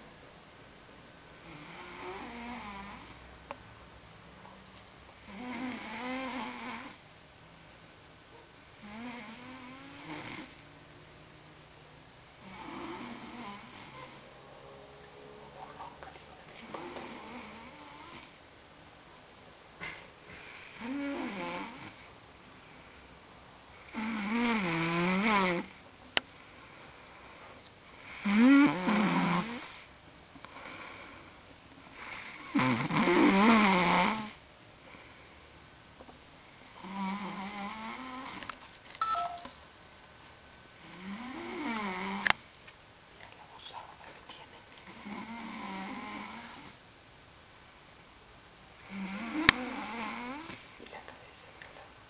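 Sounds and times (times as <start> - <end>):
heavy snoring: 1.5 - 3.2, 5.3 - 7.0, 8.8 - 10.6, 12.4 - 14.4, 16.6 - 18.4, 19.8 - 22.1, 23.8 - 25.8, 28.0 - 29.9, 32.0 - 34.4, 36.8 - 38.5, 40.8 - 42.3, 44.9 - 46.8, 48.8 - 50.8
person snoring: 12.4 - 14.3, 19.8 - 22.1, 28.1 - 29.9, 32.3 - 34.4
quiet breath: 26.3 - 28.0, 29.8 - 32.4, 34.8 - 35.6.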